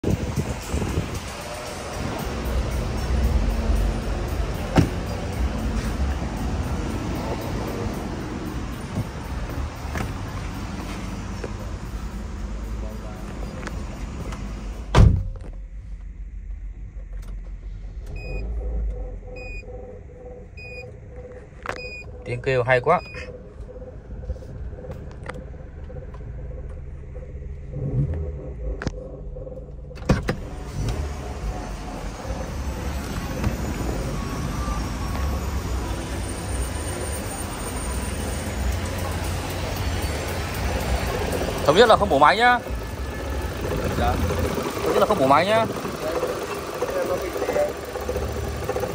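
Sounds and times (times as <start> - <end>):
car engine rumbling: 0.0 - 48.9
loud thud: 14.9 - 15.7.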